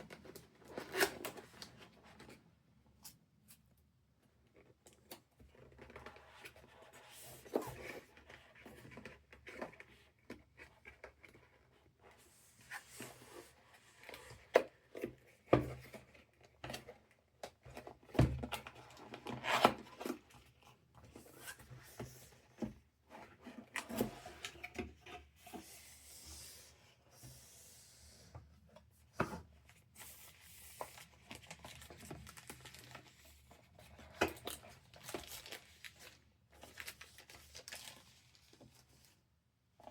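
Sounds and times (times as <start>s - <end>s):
cardboard and wrapping rustling: 28.8s - 39.4s.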